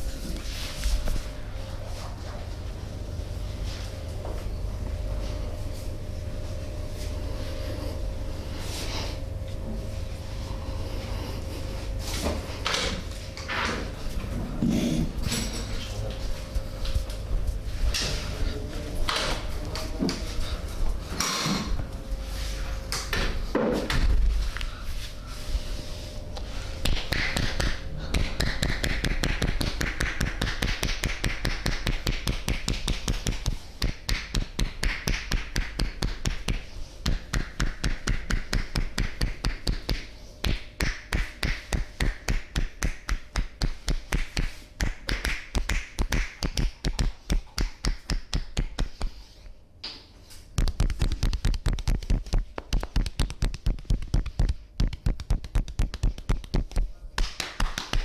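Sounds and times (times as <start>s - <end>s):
hands tapping body in massage: 26.8s - 49.1s, 50.6s - 58.0s.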